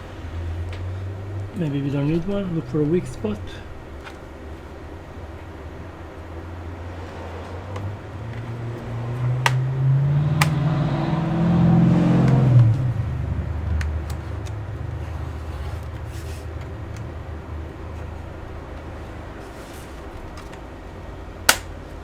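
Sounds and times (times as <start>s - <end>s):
vehicle engine accelerating: 0.0s - 20.3s
sharp clicks: 10.4s - 10.6s.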